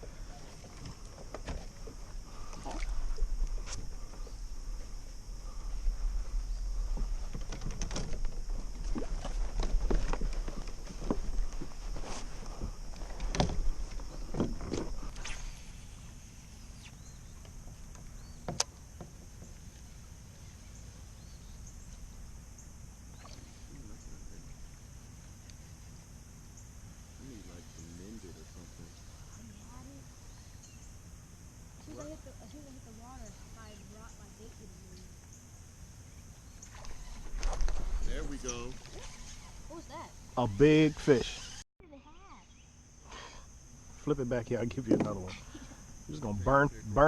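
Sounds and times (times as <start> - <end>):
kayak knocking and scraping: 0.0 - 15.3, 17.4 - 19.9, 36.6 - 39.8, 44.6 - 45.4.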